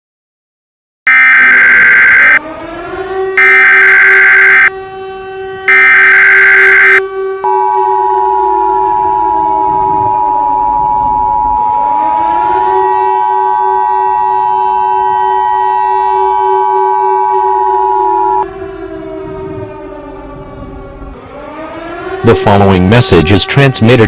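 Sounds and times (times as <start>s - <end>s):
two-tone attention signal: 1.1s - 2.4s, 3.4s - 4.7s, 5.7s - 12.1s, 16.2s - 18.4s
civil defense siren wailing: 1.1s - 24.0s.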